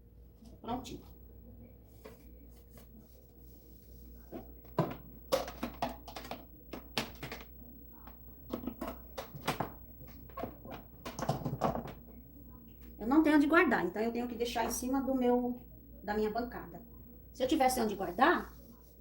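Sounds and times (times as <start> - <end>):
household items clattering on counter: 4.7 - 7.5, 8.5 - 12.0.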